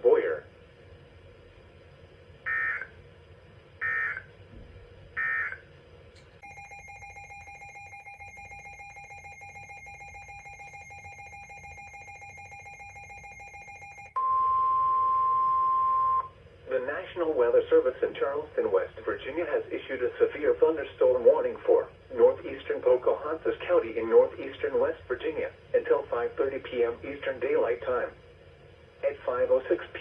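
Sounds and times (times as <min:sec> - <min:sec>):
loud steady alert tone: 0:02.4 - 0:03.0, 0:03.8 - 0:04.4, 0:05.2 - 0:05.7, 0:06.4 - 0:16.3.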